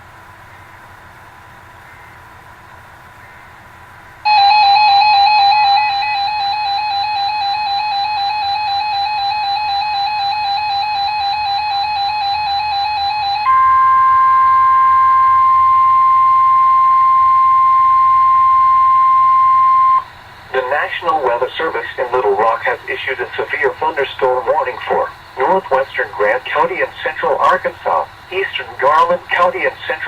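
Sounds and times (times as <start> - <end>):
steady single-pitch alarm tone: 4.2 - 30.0
warbling electronic alert beep: 4.3 - 20.0.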